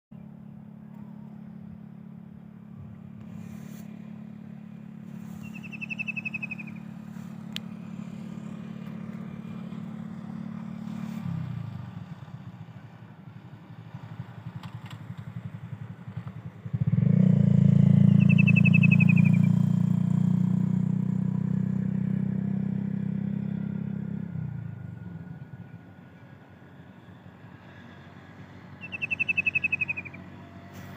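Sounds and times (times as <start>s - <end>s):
vehicle engine drone: 0.1s - 30.9s
kingfisher trilled call: 5.2s - 6.9s, 18.1s - 19.6s, 28.8s - 30.4s.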